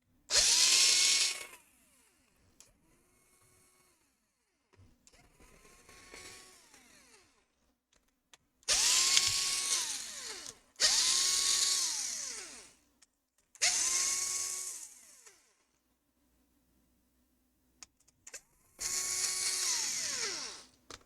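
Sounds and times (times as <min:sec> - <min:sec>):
electric screwdriver whirring: 0:00.3 - 0:01.6, 0:08.7 - 0:12.7, 0:18.8 - 0:20.7.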